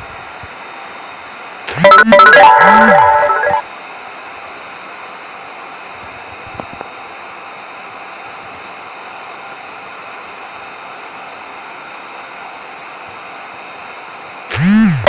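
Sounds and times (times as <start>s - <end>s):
hair dryer running: 4.1s - 15.0s.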